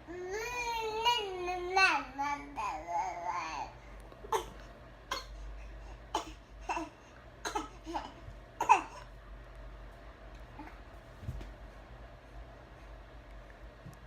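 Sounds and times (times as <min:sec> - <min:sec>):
baby coughing: 0:04.3 - 0:05.4, 0:06.1 - 0:09.1.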